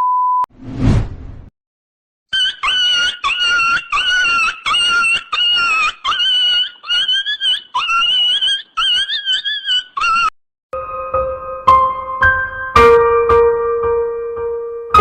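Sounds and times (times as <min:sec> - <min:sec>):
high-pitched sobbing wails: 0:02.4 - 0:10.3.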